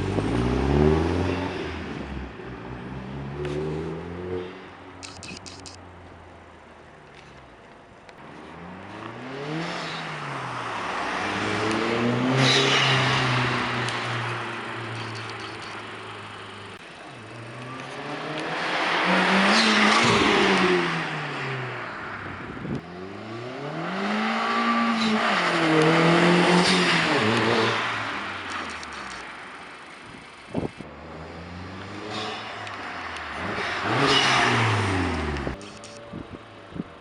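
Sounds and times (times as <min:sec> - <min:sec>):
car engine revving: 0:08.3 - 0:36.0.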